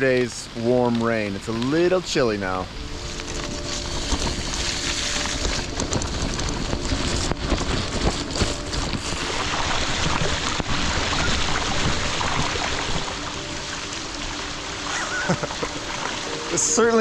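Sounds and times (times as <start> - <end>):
heavy rain: 0.0 - 17.0
raindrops hitting close by: 0.0 - 17.0
wind noise on microphone: 2.4 - 15.8.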